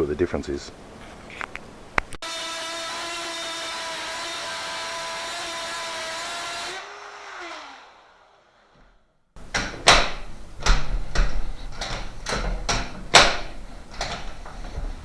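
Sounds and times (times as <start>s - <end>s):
power tool whining and spinning down: 2.2s - 9.0s.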